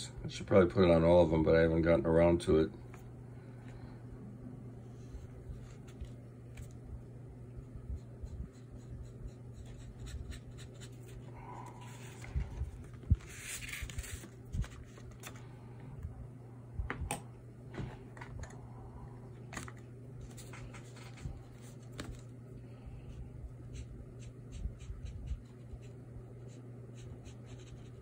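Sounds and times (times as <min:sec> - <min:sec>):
steady low hum: 0:00.0 - 0:28.0
pen scratching on paper: 0:08.0 - 0:11.2, 0:23.6 - 0:28.0.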